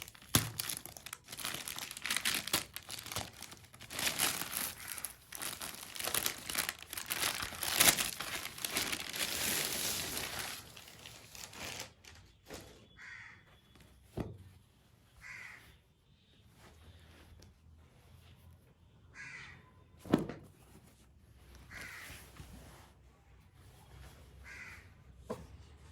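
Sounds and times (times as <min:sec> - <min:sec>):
packaging tearing: 0:00.0 - 0:12.2
plastic packaging crinkling: 0:00.0 - 0:12.6.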